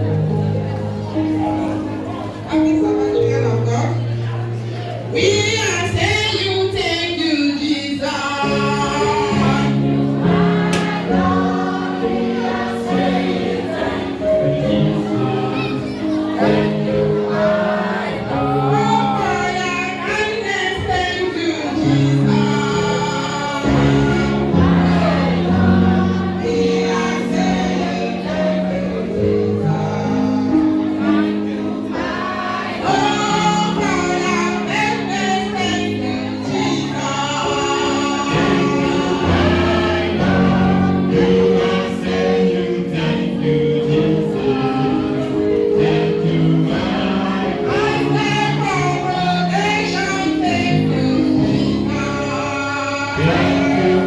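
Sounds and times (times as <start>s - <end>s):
choir singing gospel song: 0.0s - 2.9s, 4.0s - 54.0s
instrumental accompaniment: 8.5s - 54.0s.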